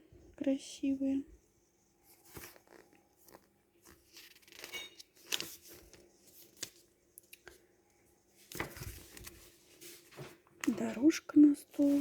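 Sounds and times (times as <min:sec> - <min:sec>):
paper pages rustling: 0:02.0 - 0:07.6, 0:08.4 - 0:12.0.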